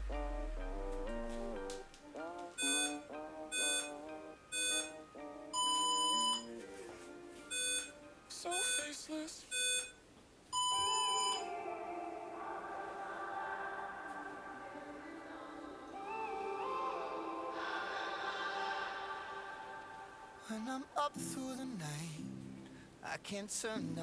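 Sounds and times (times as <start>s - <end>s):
electronic music: 0.0s - 2.9s
interval timer beeps: 3.6s - 5.0s.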